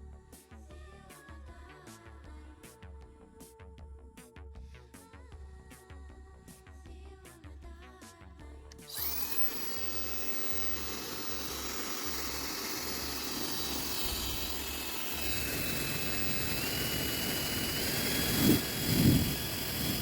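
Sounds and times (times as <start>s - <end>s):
hair dryer blowing: 8.8s - 20.0s.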